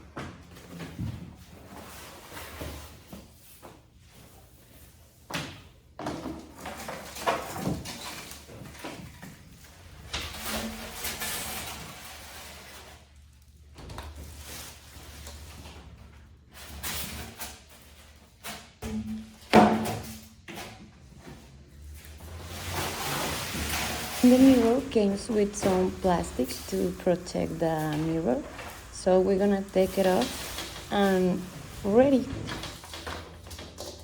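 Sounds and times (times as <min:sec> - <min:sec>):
cardboard and packing rustling: 0:21.0 - 0:34.0.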